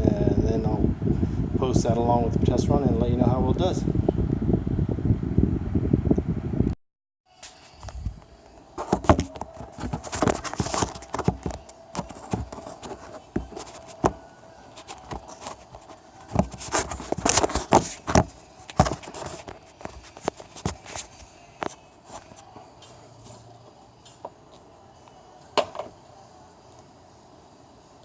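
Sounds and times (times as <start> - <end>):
faint steady hum: 7.5 - 28.0.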